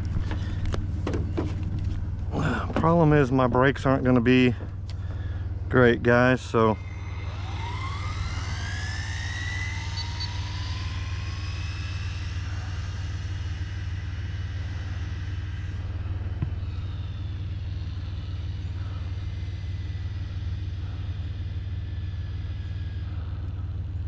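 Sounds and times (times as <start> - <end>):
electric motor whine: 0.0 - 24.0
low rumble: 0.0 - 24.0.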